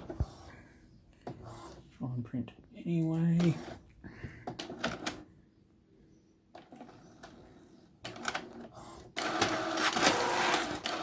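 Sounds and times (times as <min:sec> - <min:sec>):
printer motors running: 0:07.1 - 0:11.0.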